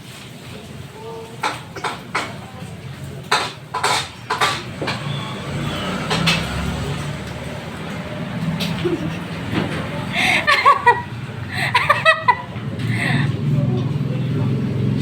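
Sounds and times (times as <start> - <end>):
cutlery clinking on plate: 1.4 - 2.4, 3.2 - 6.7.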